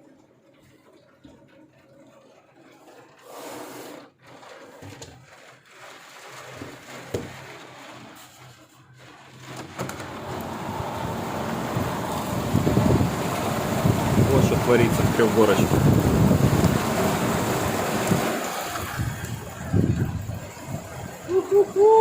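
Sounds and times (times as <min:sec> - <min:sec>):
heavy rain: 0:10.0 - 0:22.0
wind: 0:10.3 - 0:22.0
wind gusts buffeting microphone: 0:10.4 - 0:21.3.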